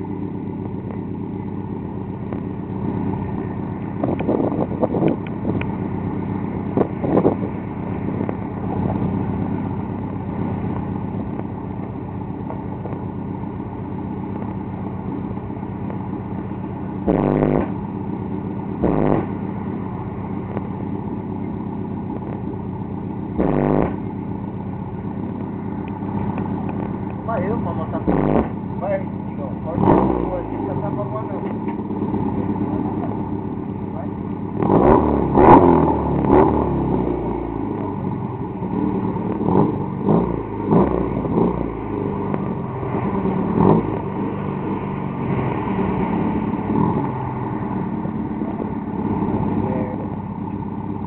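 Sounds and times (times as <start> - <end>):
low drone: 0.0 - 51.0
loud subwoofer bass blasts: 1.9 - 13.1, 14.4 - 31.4, 33.9 - 45.2.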